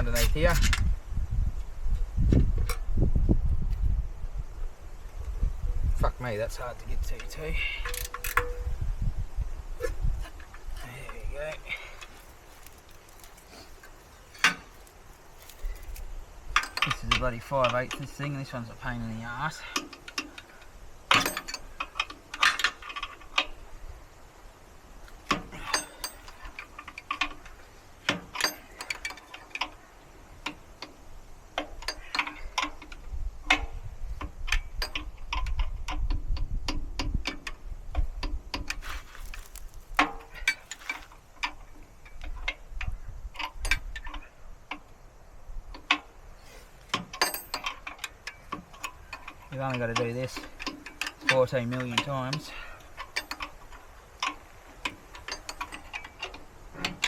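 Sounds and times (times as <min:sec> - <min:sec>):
wrench clicking on bolt: 0:07.8 - 0:08.7, 0:12.0 - 0:17.0.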